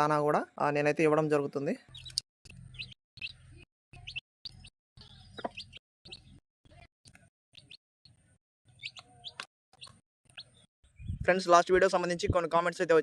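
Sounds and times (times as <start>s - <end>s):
faint bird chirps: 1.8s - 11.8s.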